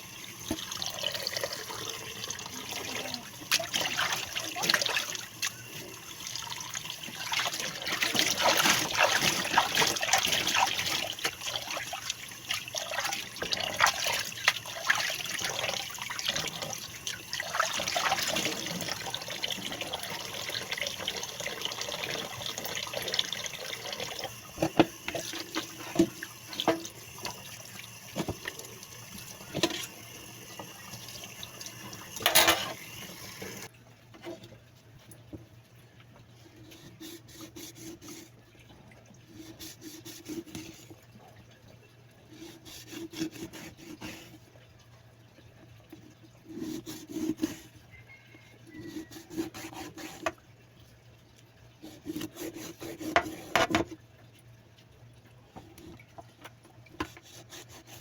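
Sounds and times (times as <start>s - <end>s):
tap water running into sink: 0.1s - 33.7s.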